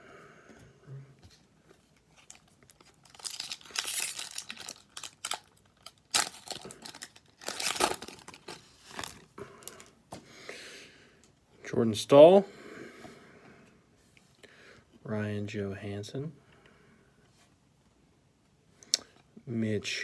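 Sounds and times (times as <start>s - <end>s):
card pack wrapper crinkling and tearing: 2.2s - 9.9s.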